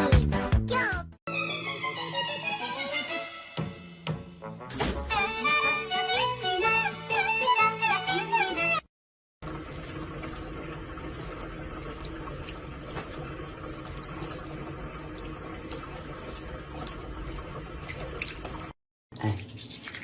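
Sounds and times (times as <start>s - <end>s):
small clicks or splashes: 9.4s - 18.8s, 19.4s - 20.0s
running water: 9.4s - 20.0s.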